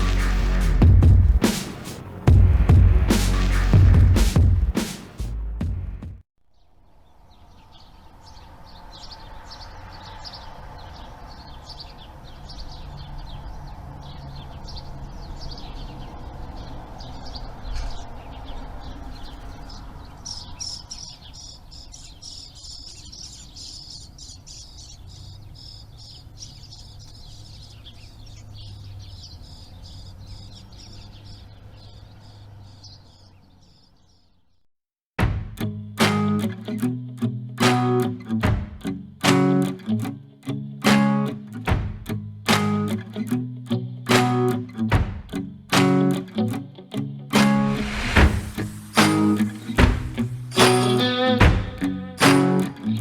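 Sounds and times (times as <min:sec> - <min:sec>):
birds chirping: 0:06.5 - 0:34.7, 0:42.1 - 0:53.0.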